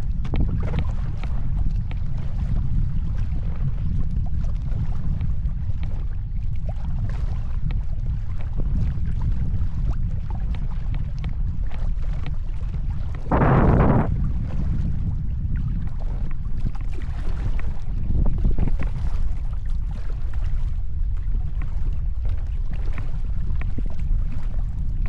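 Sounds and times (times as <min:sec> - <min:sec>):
paddle splashes and drips: 0:00.0 - 0:25.0
wind buffeting microphone: 0:00.0 - 0:25.0
rush of noise: 0:13.3 - 0:14.2.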